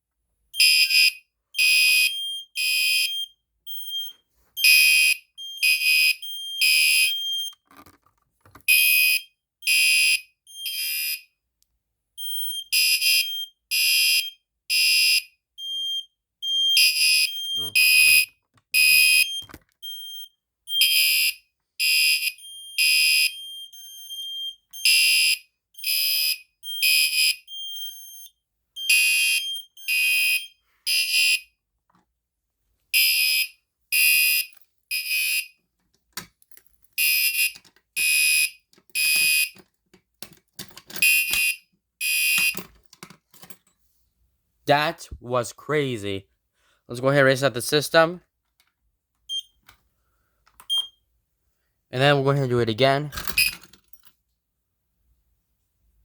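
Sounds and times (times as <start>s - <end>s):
fire alarm pulses: 0.6s - 7.6s, 8.7s - 11.3s, 12.2s - 31.5s, 33.0s - 35.6s, 37.0s - 39.6s, 41.0s - 42.6s, 49.3s - 49.6s, 50.7s - 51.0s.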